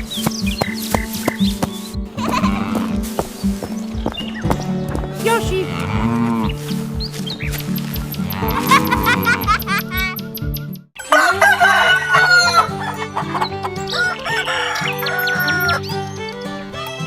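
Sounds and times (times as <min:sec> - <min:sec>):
background music: 0:00.0 - 0:17.0
rooster crowing: 0:11.1 - 0:12.7, 0:14.0 - 0:15.8.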